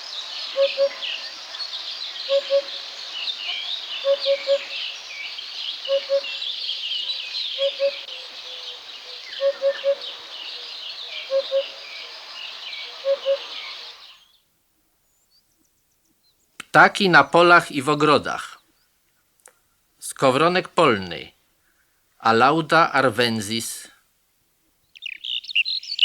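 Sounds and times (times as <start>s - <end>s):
hoopoe hooting: 0.0s - 1.1s, 2.3s - 2.9s, 4.0s - 4.8s, 5.8s - 6.4s, 7.2s - 11.8s, 12.9s - 13.6s
songbirds chirping: 0.0s - 26.0s.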